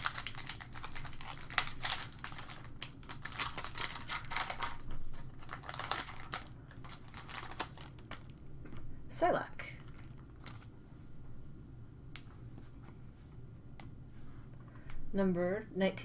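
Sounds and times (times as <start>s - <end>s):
foil wrapper crinkling and tearing: 0.0s - 8.5s.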